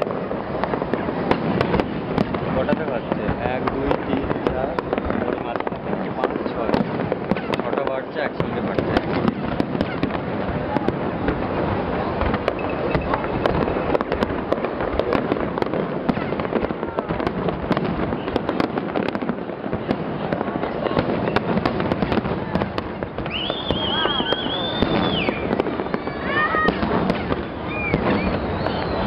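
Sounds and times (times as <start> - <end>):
fireworks bangs and crackling: 0.0 - 29.0
high wavering whistle: 23.2 - 26.4, 27.4 - 29.0.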